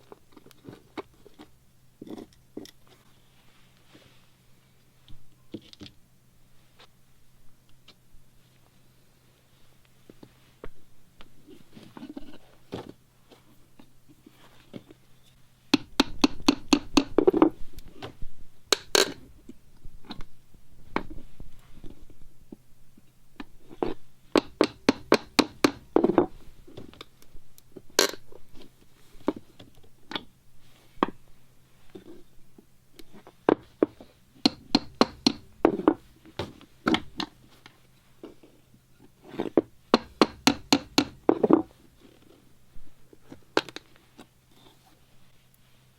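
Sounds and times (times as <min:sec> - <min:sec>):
metal tools tapping on wooden frame: 0:15.8 - 0:17.5, 0:24.3 - 0:26.3, 0:34.5 - 0:37.3, 0:39.9 - 0:41.7.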